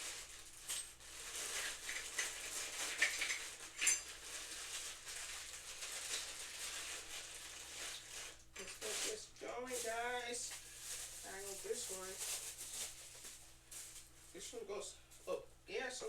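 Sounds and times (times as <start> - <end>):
plastic packaging crinkling: 0.0 - 15.4
hard parts clinking: 1.8 - 4.2.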